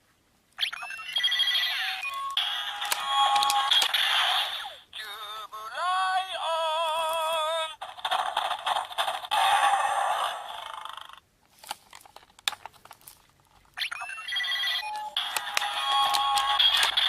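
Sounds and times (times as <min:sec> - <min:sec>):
toy electronic sound effects: 0:00.6 - 0:04.8, 0:13.8 - 0:17.0.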